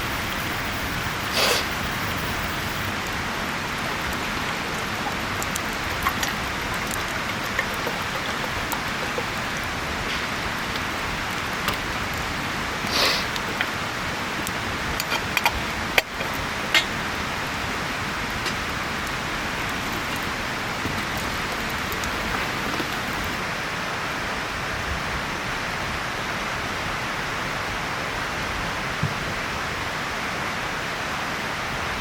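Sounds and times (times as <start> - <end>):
steady rushing hiss: 0.0 - 25.4.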